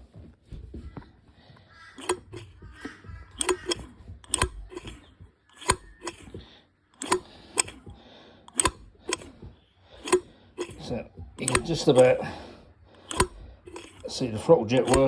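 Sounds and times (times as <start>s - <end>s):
throttle snapping shut click: 2.0s - 12.2s, 13.0s - 14.1s, 14.7s - 15.0s.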